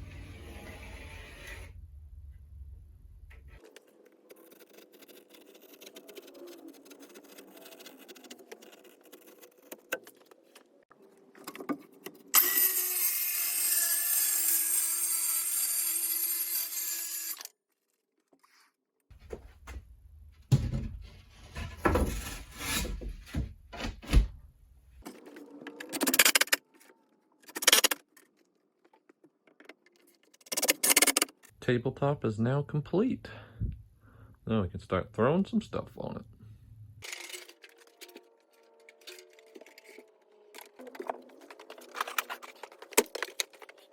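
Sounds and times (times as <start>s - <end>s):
power saw cutting wood: 12.3s - 17.5s.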